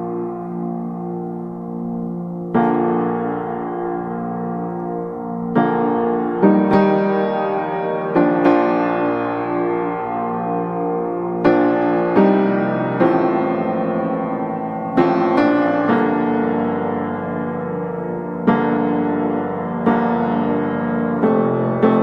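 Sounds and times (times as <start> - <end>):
gentle piano chords: 0.0 - 22.0.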